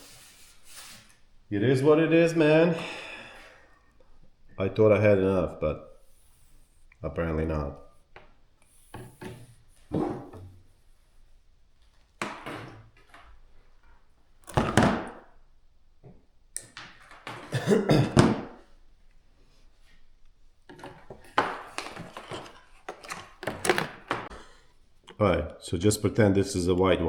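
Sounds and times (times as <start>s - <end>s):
handling wire and tools: 19.8s - 25.1s.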